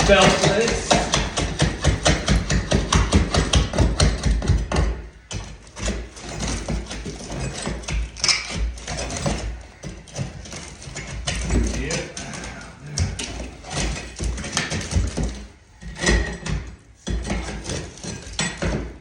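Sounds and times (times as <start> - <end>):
sharp knocks on wall: 0.0 - 10.6
clatter of tools: 0.0 - 19.0
falling plaster: 0.0 - 19.0.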